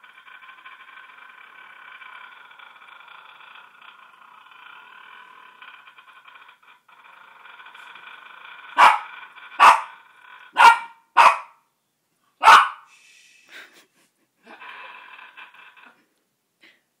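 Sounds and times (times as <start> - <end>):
dog barking: 8.8 - 9.9, 10.6 - 11.6, 12.4 - 12.9.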